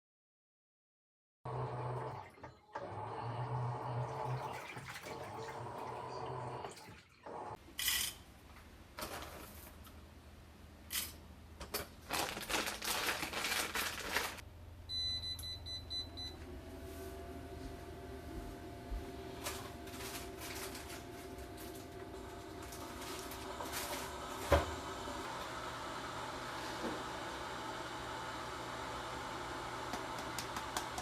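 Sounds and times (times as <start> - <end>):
appliance electronic beeps: 14.9 - 16.5.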